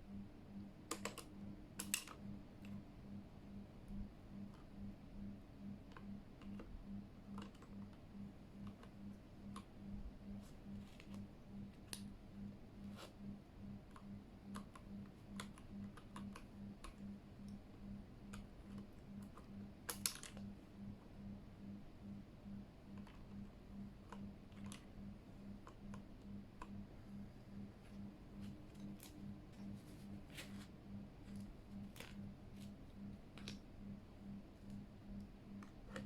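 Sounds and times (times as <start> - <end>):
faint pulsing low hum: 0.0 - 36.0
mechanical keyboard clicks: 0.9 - 2.2.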